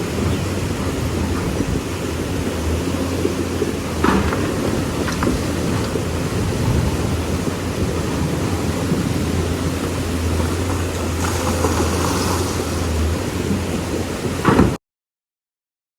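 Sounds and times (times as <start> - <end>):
excavator diesel engine running: 0.0 - 14.8
river water rushing: 0.0 - 14.8
loud clatter: 3.2 - 9.0.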